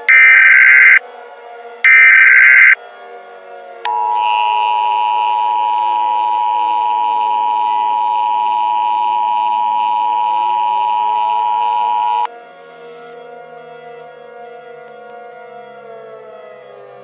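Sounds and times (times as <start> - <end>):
two-tone alert tone: 0.0 - 1.0, 1.9 - 2.8, 3.9 - 12.3.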